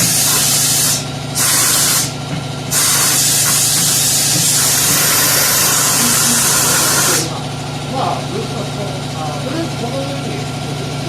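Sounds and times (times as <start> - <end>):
compressed air hissing: 0.0 - 7.3
steady low hum: 0.0 - 11.0.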